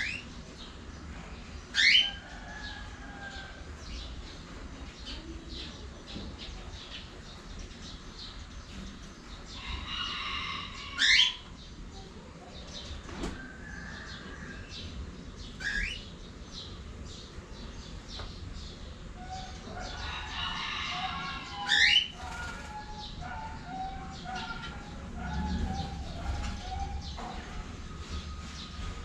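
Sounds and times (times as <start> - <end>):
bird chattering warbles and chirps: 1.6 - 2.3, 4.9 - 13.0, 14.6 - 27.6.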